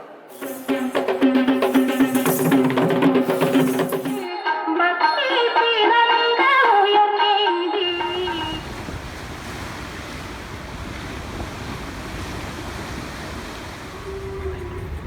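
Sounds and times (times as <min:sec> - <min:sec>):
music: 0:00.3 - 0:08.5.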